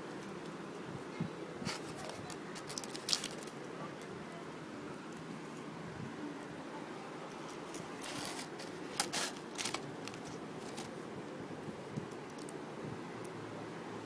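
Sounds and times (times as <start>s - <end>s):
small objects clicking and scraping: 1.7s - 3.6s, 7.5s - 11.0s.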